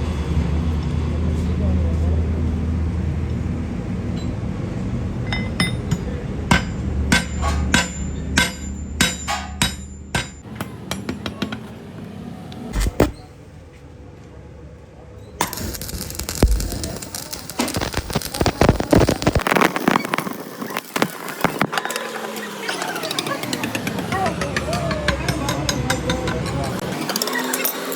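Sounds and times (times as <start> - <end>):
hammer striking metal: 5.2 - 11.6
loud hissing crackling noise: 15.4 - 22.8.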